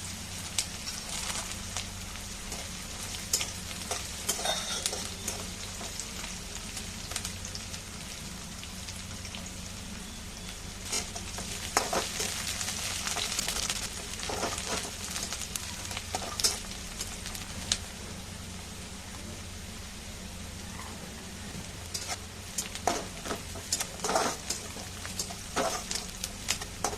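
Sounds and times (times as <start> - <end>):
food sizzling in oil: 0.0 - 26.9
spatula scraping a pan: 2.5 - 6.0, 10.9 - 13.4, 14.2 - 15.3, 21.9 - 26.9.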